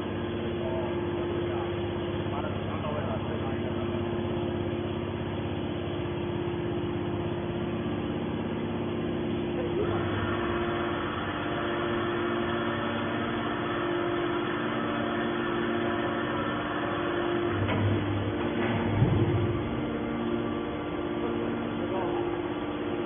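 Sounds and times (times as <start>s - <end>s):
hydraulic baler humming: 0.0s - 23.0s
hissing machine noise: 9.4s - 23.0s.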